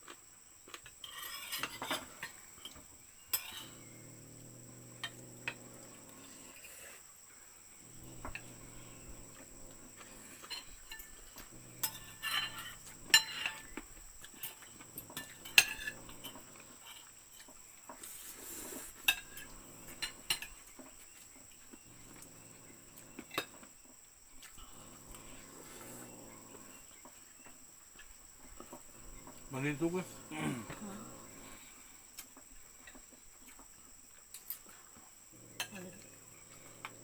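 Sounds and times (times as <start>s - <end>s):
cutlery clinking on plates: 0.8s - 3.8s, 10.4s - 18.0s.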